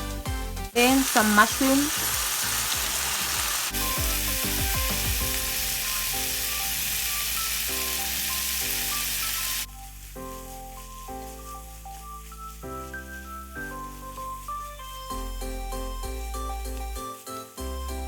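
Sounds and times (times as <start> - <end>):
background music with held notes: 0.0 - 18.0
food sizzling in a pan: 0.8 - 11.6.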